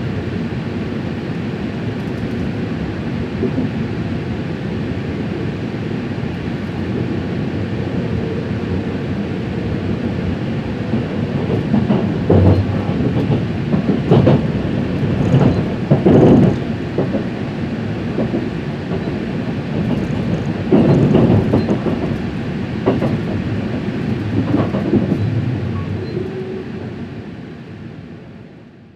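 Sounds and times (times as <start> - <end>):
train rolling rumble: 0.0 - 28.9
train wheel knocks: 10.3 - 26.7.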